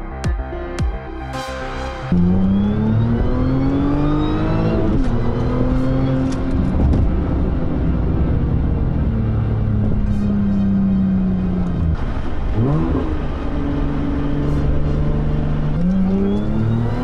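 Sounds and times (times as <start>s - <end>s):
electronic music with beat: 0.0s - 4.4s
car engine accelerating: 2.0s - 17.0s.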